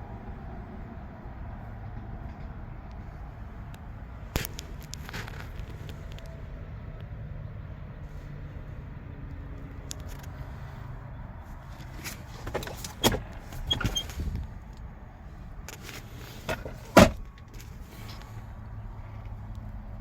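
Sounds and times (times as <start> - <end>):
car interior parts clicking: 11.8 - 14.4, 15.7 - 17.8.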